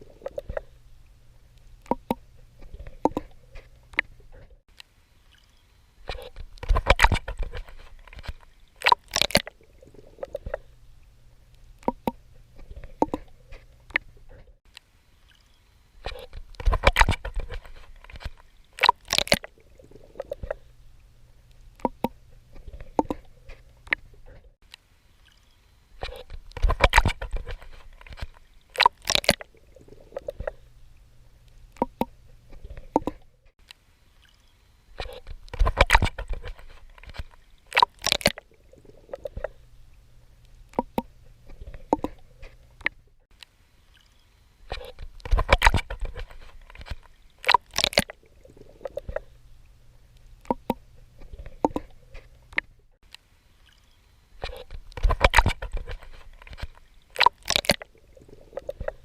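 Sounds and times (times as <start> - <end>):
low steady hum: 0.0 - 59.0
swimming strokes splashing in water: 15.2 - 20.8, 25.2 - 30.8, 34.2 - 39.7, 43.9 - 49.4, 53.6 - 59.0.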